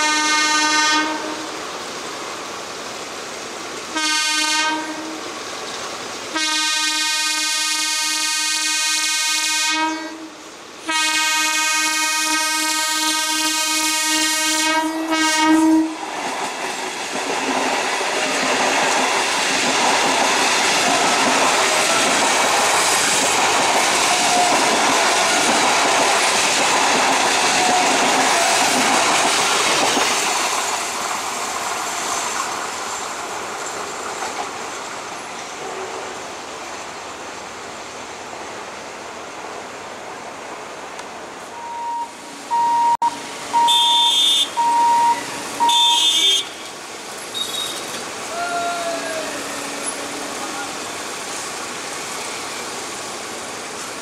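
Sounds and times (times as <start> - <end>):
train horn: 0.0 - 1.6, 4.0 - 5.3, 6.4 - 16.0, 24.1 - 25.5, 43.6 - 46.7, 48.4 - 50.8
train wheel and rail noise: 0.0 - 54.0
clickety-clack over rail joints: 15.2 - 36.2, 46.4 - 54.0.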